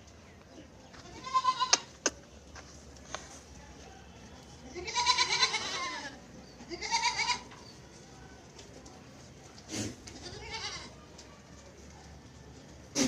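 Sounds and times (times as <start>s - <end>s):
goats bleating: 1.0s - 1.9s, 4.8s - 7.5s, 10.0s - 11.0s.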